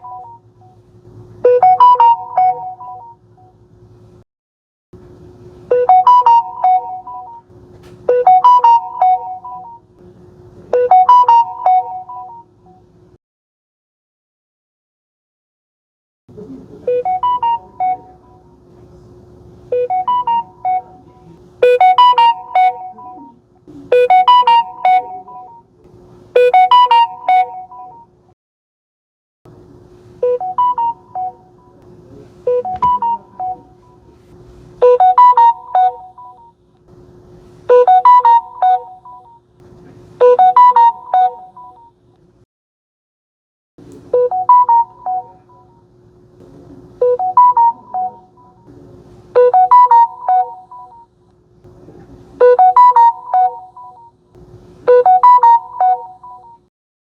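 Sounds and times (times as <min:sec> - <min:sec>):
phone notification chime: 0:24.0 - 0:25.6, 0:26.4 - 0:28.0, 0:54.9 - 0:56.6.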